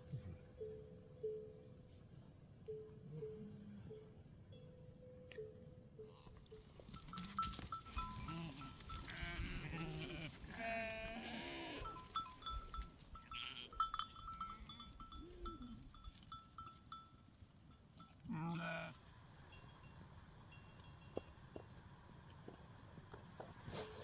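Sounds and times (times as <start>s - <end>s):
small livestock bleating: 6.0s - 6.5s, 7.1s - 12.1s, 13.2s - 15.9s, 18.2s - 19.0s.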